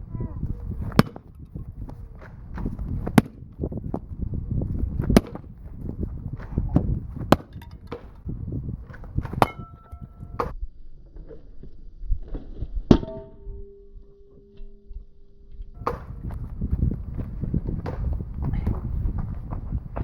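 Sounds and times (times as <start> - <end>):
metal strikes and crunching: 0.8 - 1.6, 6.8 - 8.3, 8.9 - 10.6
metallic ring: 9.4 - 10.5, 12.9 - 16.3.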